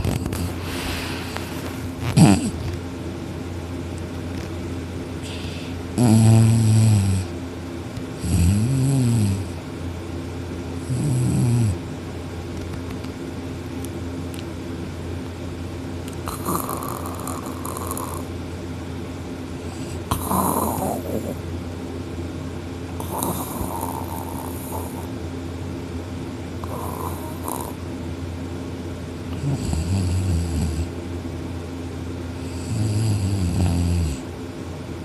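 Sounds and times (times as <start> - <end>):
steady low hum: 0.0 - 35.0
man snoring: 2.0 - 2.6, 5.2 - 7.3, 8.2 - 9.6, 10.8 - 11.8, 16.2 - 18.3, 19.7 - 21.4, 23.0 - 25.1, 26.6 - 27.8, 29.4 - 30.9, 32.4 - 34.3.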